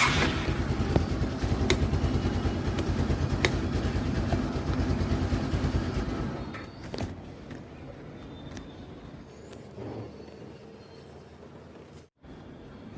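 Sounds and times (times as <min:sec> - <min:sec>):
scooter engine idling: 0:00.0 - 0:06.8.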